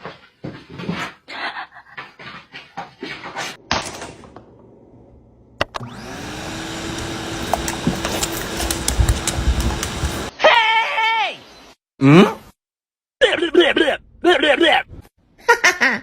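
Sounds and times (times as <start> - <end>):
motor humming and hissing: 5.0 - 10.3.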